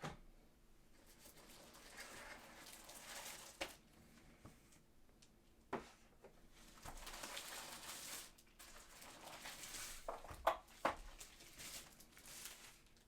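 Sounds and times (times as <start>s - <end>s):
packaging rustling and sliding: 6.8s - 10.2s, 11.1s - 13.0s.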